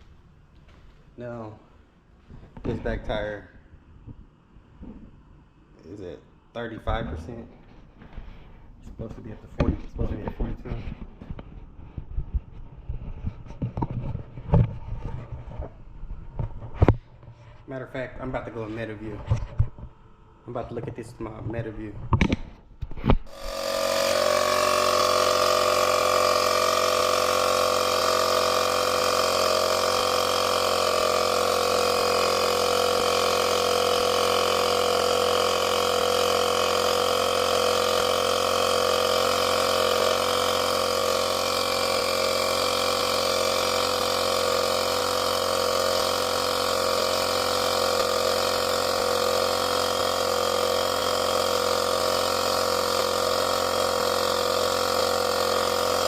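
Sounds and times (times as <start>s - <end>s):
tire inflator humming: 22.1s - 56.0s.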